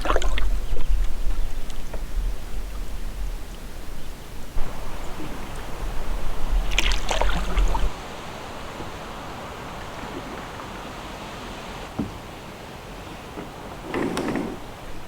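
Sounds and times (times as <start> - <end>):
wind rumble on microphone: 0.0 - 11.9
paddle splashing water: 0.0 - 12.2
wash of water: 4.6 - 11.9.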